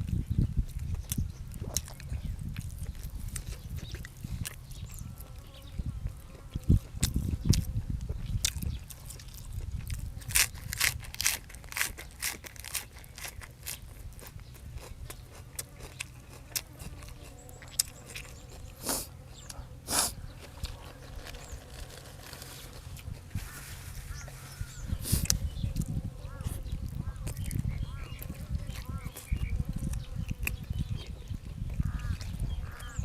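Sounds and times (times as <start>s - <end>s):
person chewing and crunching food: 0.0s - 33.0s.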